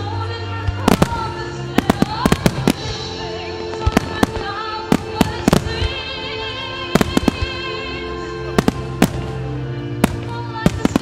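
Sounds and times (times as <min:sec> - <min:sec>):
music playing: 0:00.0 - 0:11.0
firework bangs: 0:00.8 - 0:06.1, 0:06.9 - 0:07.7, 0:08.5 - 0:09.4.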